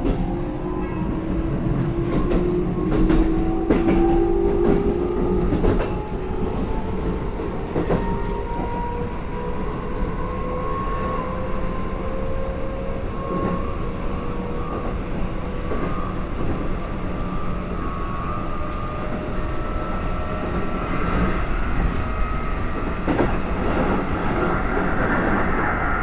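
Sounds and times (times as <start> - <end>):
train rail rumble: 0.0 - 26.0
train knocks: 1.0 - 6.7.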